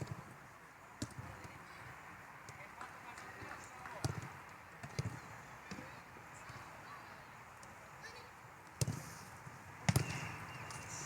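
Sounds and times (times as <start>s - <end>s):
football being kicked: 4.0s - 5.9s, 8.8s - 9.0s, 9.8s - 10.3s.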